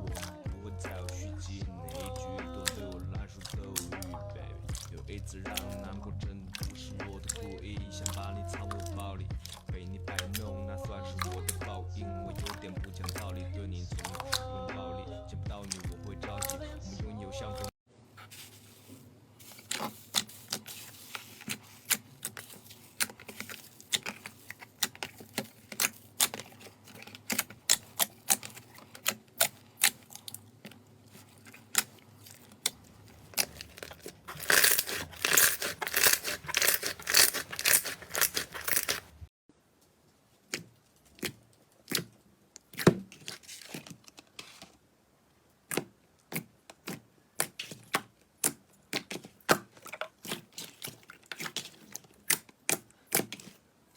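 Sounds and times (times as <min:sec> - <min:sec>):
slime squished by hand: 0:19.4 - 0:39.2, 0:40.5 - 0:44.0, 0:45.6 - 0:53.6.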